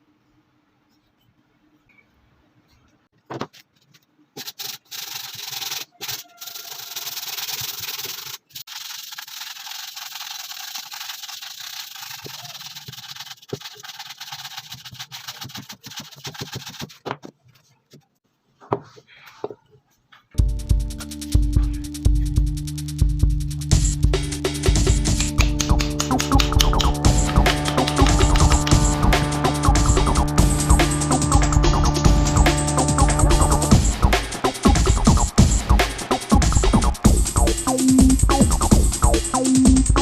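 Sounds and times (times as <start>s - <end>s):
sanding rub: 4.4s - 17.1s.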